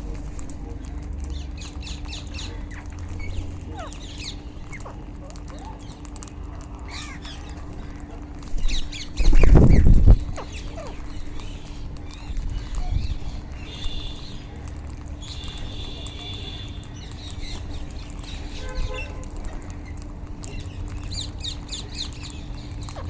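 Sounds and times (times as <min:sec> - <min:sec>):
parakeets squawking: 0:00.0 - 0:23.0.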